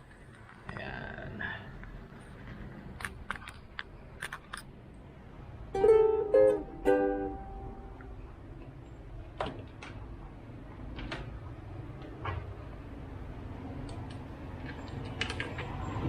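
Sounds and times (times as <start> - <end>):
ukulele strings plucked: 5.7 - 8.3.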